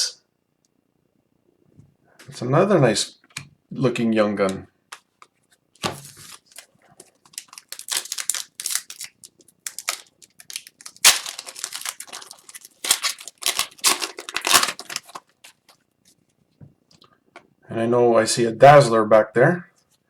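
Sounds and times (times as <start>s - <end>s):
cards rustling: 4.9s - 15.8s
wrapper crinkling and tearing: 5.8s - 15.8s.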